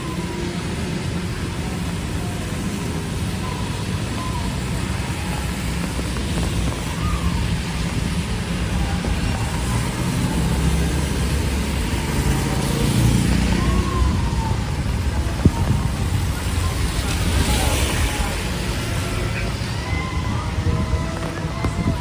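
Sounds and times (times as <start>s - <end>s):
rain and wind: 0.0s - 22.0s
traffic on wet street: 0.0s - 22.0s.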